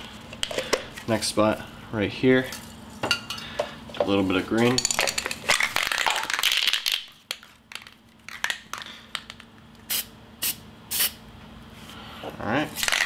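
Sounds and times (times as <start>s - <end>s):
spray can hissing: 9.9s - 11.2s.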